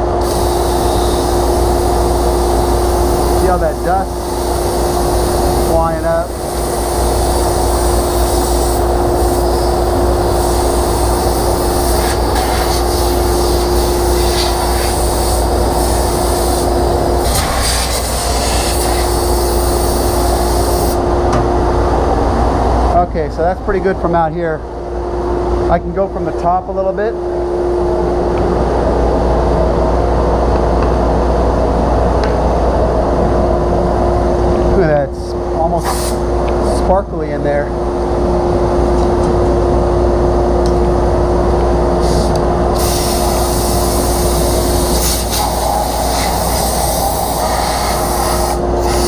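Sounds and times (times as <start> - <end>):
shop vacuum running: 0.0 - 49.0
compressed air blowing: 0.2 - 1.6, 4.1 - 21.0, 35.8 - 36.3, 42.0 - 49.0.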